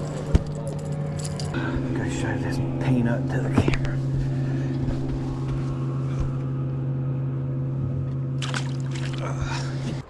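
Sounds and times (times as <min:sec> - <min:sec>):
boat motor humming: 0:00.0 - 0:10.0.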